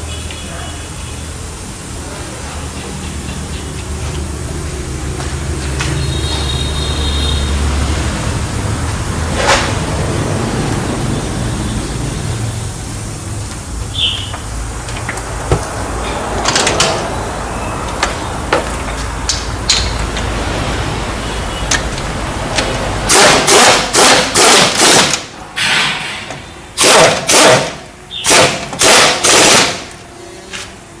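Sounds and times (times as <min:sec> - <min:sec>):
pneumatic impact wrench bursts: 0:23.1 - 0:30.0.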